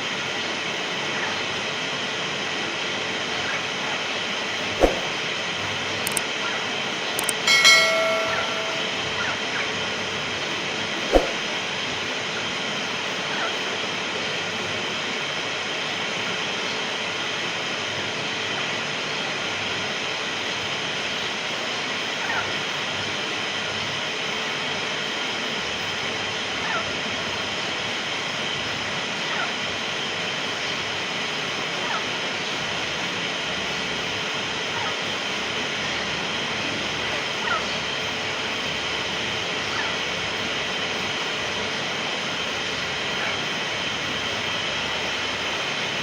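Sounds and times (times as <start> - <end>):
steady background noise: 0.0 - 46.0.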